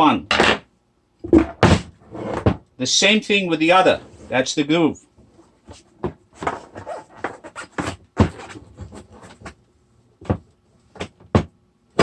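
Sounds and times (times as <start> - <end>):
rubber tire rubbing and scraping: 6.4 - 9.6.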